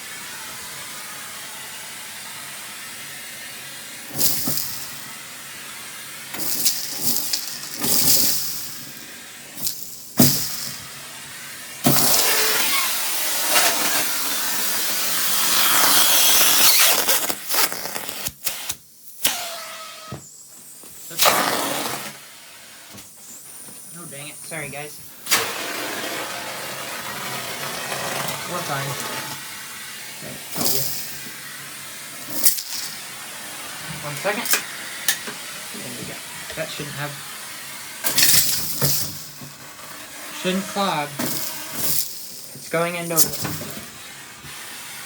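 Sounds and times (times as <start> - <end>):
vacuum air rushing: 23.8 - 45.0.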